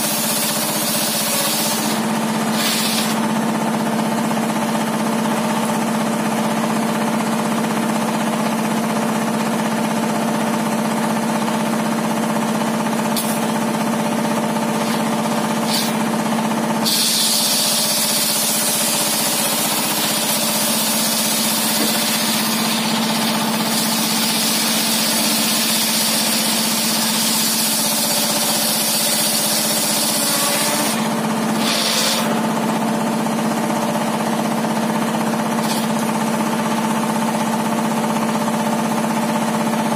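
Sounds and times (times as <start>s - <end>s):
saw blade cutting wood: 0.0s - 3.3s, 13.2s - 13.5s, 14.7s - 16.1s, 16.8s - 32.4s, 35.6s - 36.1s
table saw running: 0.0s - 9.1s, 10.9s - 37.5s.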